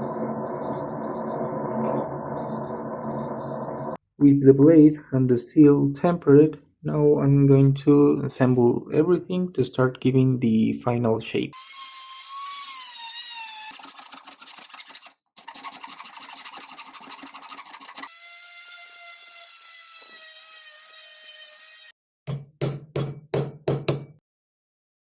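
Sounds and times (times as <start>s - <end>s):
machine whine: 0.0s - 4.0s
rasping scraping strokes: 11.6s - 18.1s
sharp knocks: 22.3s - 24.2s.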